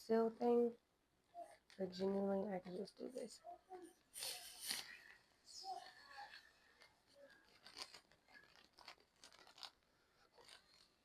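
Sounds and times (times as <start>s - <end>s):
plastic bag crinkling: 4.2s - 11.0s.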